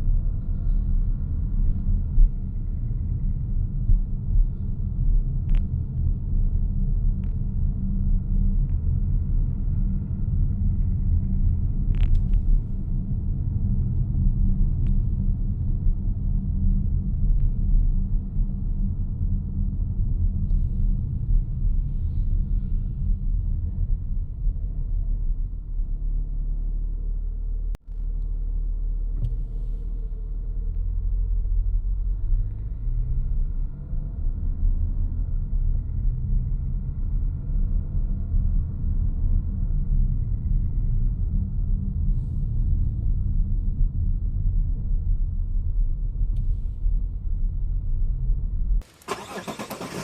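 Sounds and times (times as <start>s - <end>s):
car drivetrain and road rumble: 0.0s - 50.0s.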